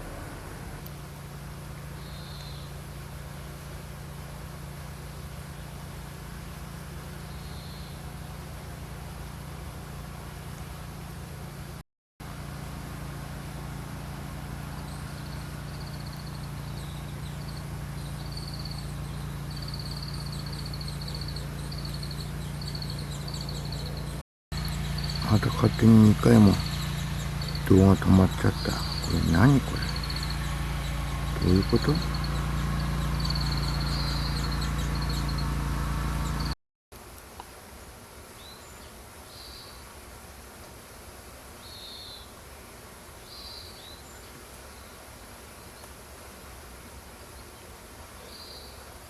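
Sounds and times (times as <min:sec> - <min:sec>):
steady low hum: 0:00.0 - 0:36.6
faint high calls: 0:14.8 - 0:36.6
high-pitched insect trill: 0:15.2 - 0:25.6, 0:28.4 - 0:35.6.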